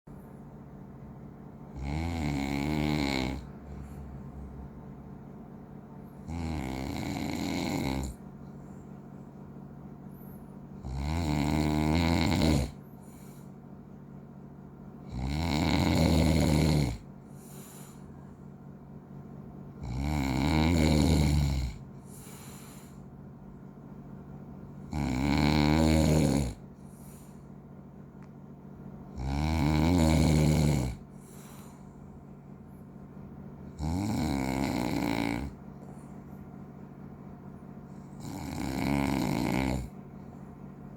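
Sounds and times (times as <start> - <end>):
person snoring: 1.7 - 3.5, 6.2 - 8.2, 10.8 - 12.8, 15.0 - 17.9, 19.8 - 22.6, 24.9 - 26.6, 29.1 - 31.8, 33.7 - 35.6, 38.1 - 40.0
quiet breathing: 2.7 - 4.6, 12.6 - 14.1, 16.2 - 18.7, 21.3 - 23.3, 26.2 - 27.8, 30.3 - 33.2.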